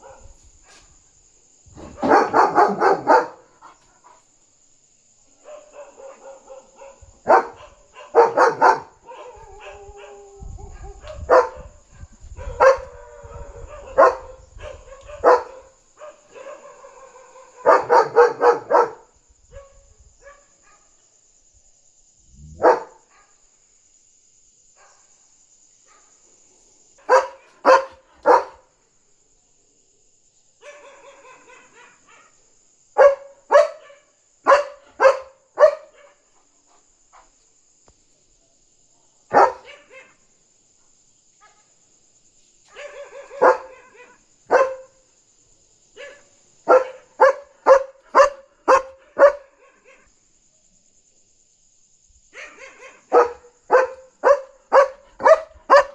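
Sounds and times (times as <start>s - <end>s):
dog barking: 0.0s - 0.8s, 1.9s - 4.2s, 5.4s - 21.0s, 22.5s - 23.4s, 24.8s - 25.1s, 25.9s - 26.2s, 27.0s - 28.7s, 30.6s - 32.4s, 33.0s - 36.3s, 39.3s - 40.2s, 42.7s - 45.0s, 46.0s - 50.1s, 52.3s - 55.9s.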